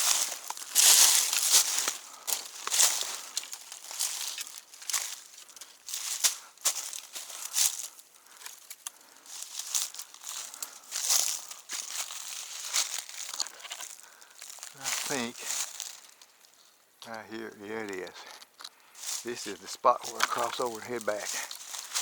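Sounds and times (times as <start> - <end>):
footsteps crunching on trail: 0.0 - 22.0.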